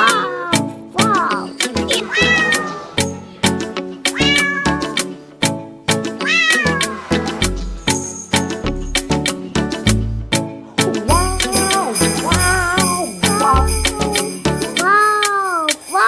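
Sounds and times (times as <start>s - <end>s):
cat meows: 0.0s - 3.4s, 4.1s - 5.1s, 6.2s - 7.2s
upbeat dance music: 11.0s - 14.8s.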